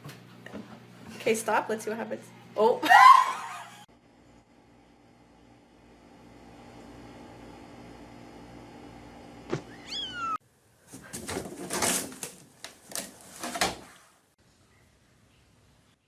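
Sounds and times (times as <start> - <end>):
background hum: 0.0 - 13.6
cat meowing: 9.7 - 10.4.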